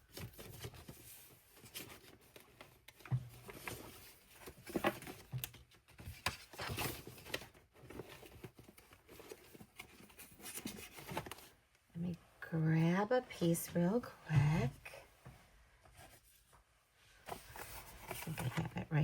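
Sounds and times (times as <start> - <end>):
paper rustling: 0.0 - 11.6, 17.2 - 18.8.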